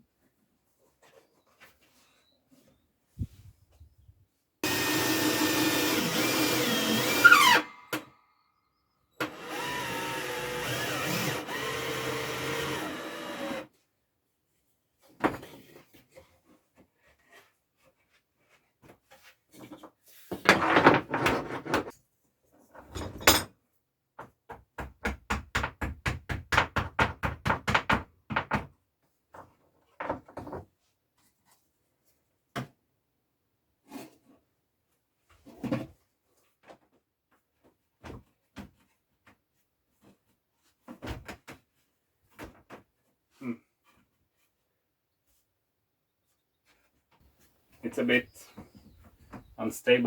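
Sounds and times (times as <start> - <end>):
small power tool running: 4.6 - 7.8, 9.2 - 13.6
knocks and clatters of cupboard work: 18.8 - 21.9, 22.7 - 23.6, 24.2 - 30.8.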